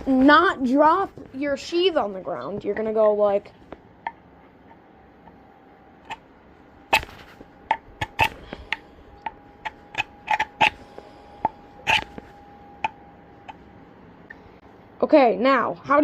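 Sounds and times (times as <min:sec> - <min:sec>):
knife scraping against sheath: 0:08.0 - 0:08.8, 0:09.6 - 0:12.4.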